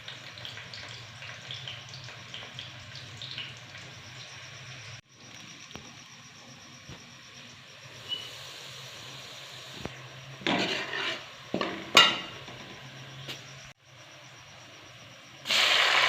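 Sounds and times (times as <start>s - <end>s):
cookware scraping and rattling: 10.4s - 12.7s.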